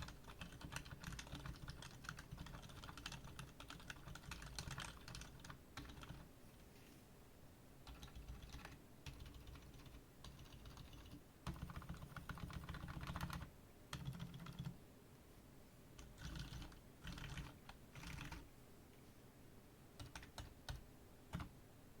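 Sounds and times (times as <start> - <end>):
mechanical keyboard typing: 0.0 - 6.2, 7.8 - 14.7, 16.0 - 18.4, 20.0 - 21.5.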